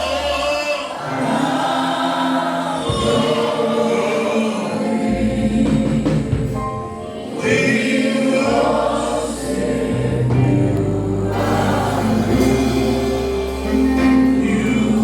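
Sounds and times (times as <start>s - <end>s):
choir and congregation singing: 0.0s - 15.0s
keyboard: 0.0s - 15.0s
bass notes: 8.4s - 15.0s.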